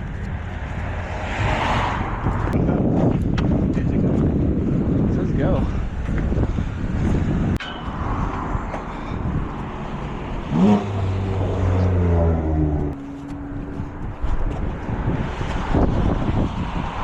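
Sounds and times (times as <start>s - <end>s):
vehicle engine accelerating: 8.4s - 17.0s.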